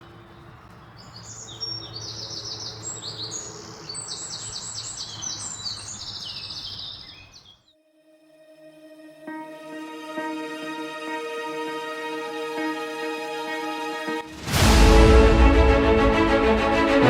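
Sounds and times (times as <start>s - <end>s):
songbirds chirping and trilling: 0.0s - 7.7s.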